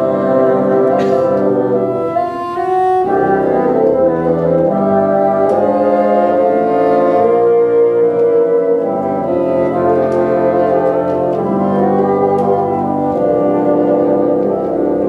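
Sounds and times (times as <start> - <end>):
bassoon ensemble playing chords: 0.0 - 15.0.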